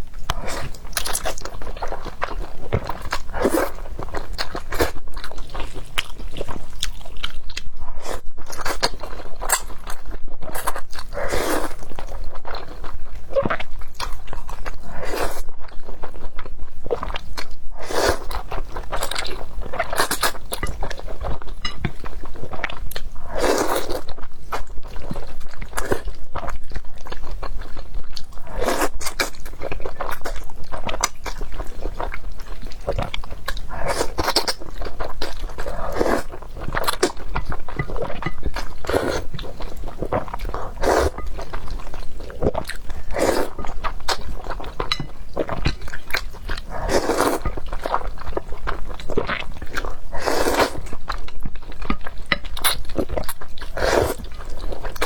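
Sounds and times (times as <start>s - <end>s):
chewing and crunching food: 0.0s - 55.0s.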